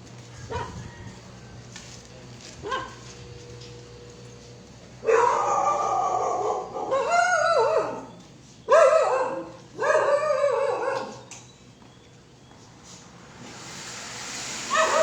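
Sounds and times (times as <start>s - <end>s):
dog howling and whining: 5.0s - 11.3s, 14.7s - 15.0s.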